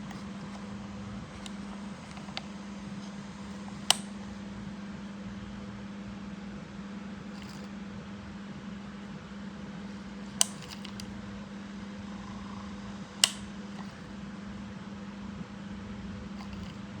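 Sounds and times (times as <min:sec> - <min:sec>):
sharp clicks: 0:03.8 - 0:04.1, 0:10.4 - 0:11.1, 0:13.2 - 0:13.9.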